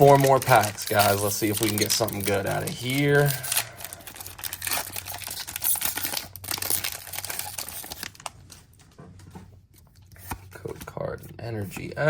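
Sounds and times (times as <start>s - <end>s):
foil wrapper crinkling: 0.0s - 8.8s.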